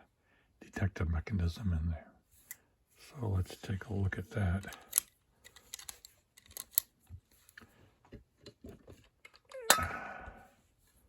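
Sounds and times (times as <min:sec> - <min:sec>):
metal clicks and clinks: 0:04.6 - 0:06.9.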